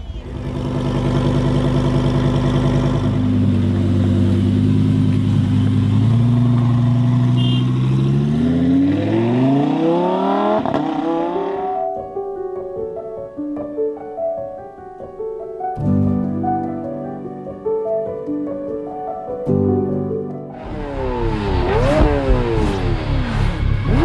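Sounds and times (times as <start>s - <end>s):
sports car engine revving: 0.0s - 11.7s, 20.6s - 24.0s.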